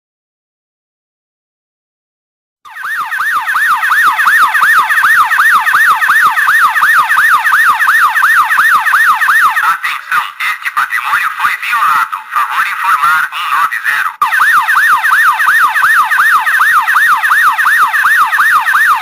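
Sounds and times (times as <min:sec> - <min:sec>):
electronic alarm siren wailing: 0:02.7 - 0:09.7, 0:14.2 - 0:19.0.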